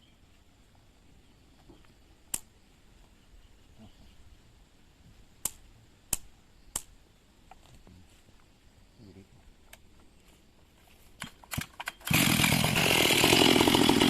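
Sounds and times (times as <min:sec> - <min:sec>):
background hiss: 0:00.0 - 0:12.1
sharp clicks: 0:01.8 - 0:02.5, 0:05.4 - 0:07.6.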